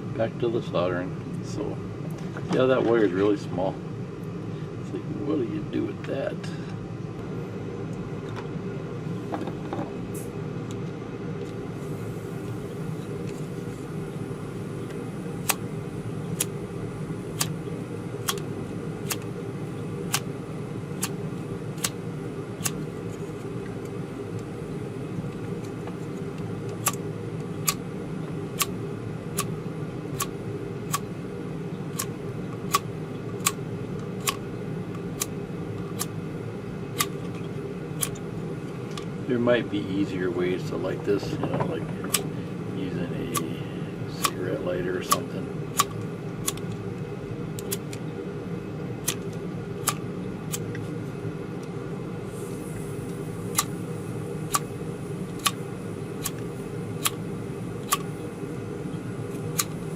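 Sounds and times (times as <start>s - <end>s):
steady low hum: 0.0s - 59.9s
soldering iron igniter clicks: 14.8s - 15.7s, 16.3s - 16.6s, 17.4s - 19.4s, 20.1s - 20.3s, 21.0s - 21.2s, 21.8s - 22.0s, 22.6s - 22.8s, 25.6s - 27.9s, 28.5s - 29.6s, 30.2s - 31.1s, 31.9s - 34.5s, 35.2s - 36.2s, 37.0s - 37.4s, 38.0s - 38.3s, 44.2s - 44.4s, 45.0s - 46.8s, 47.6s - 48.0s, 49.0s - 50.8s, 53.0s - 53.8s, 54.4s - 57.2s, 57.8s - 58.2s, 59.3s - 59.9s.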